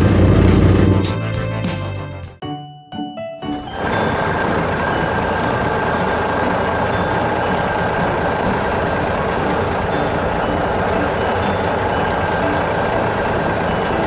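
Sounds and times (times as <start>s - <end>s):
heavy vehicle engine running: 0.0s - 1.1s, 3.8s - 14.0s.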